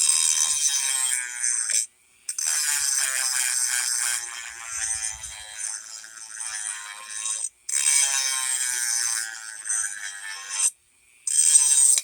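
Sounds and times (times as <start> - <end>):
rotary tool grinding metal: 0.0 - 12.0.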